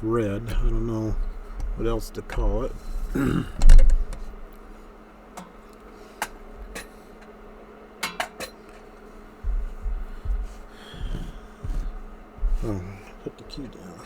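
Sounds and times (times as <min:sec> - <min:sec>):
low handling bumps: 0:00.0 - 0:04.9, 0:09.0 - 0:14.0.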